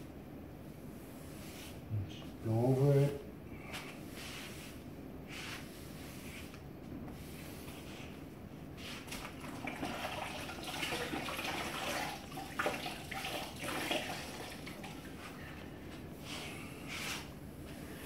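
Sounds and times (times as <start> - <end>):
sponge sloshing in bucket water: 9.0 - 15.2.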